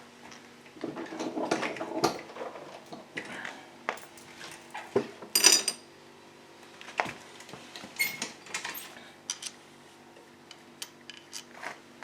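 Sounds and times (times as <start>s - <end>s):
tools clinking on metal: 4.0s - 5.8s, 8.0s - 9.6s.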